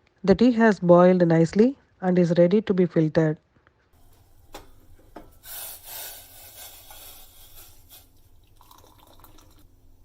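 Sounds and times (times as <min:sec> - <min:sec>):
tea pouring into a glass: 0:05.4 - 0:10.0.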